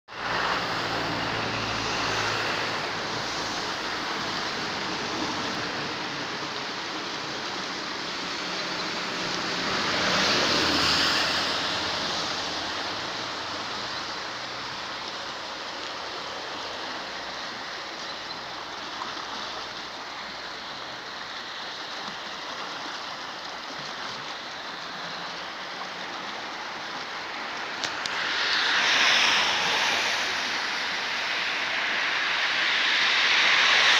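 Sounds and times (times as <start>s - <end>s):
rushing floodwater: 0.1s - 33.9s.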